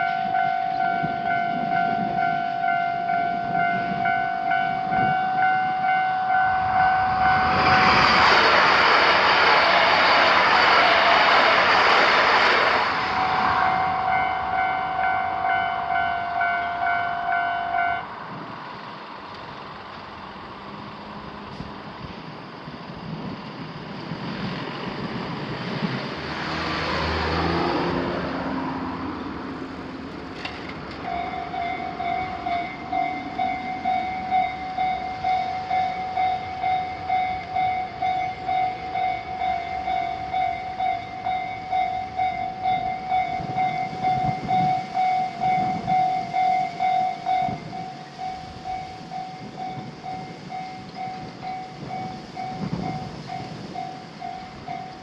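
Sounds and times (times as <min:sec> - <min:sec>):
railroad crossing bell dinging: 0:00.0 - 0:08.1, 0:12.8 - 0:20.5, 0:29.0 - 0:55.0
passing train: 0:00.0 - 0:55.0
passing vehicle: 0:06.6 - 0:21.7, 0:23.7 - 0:49.2.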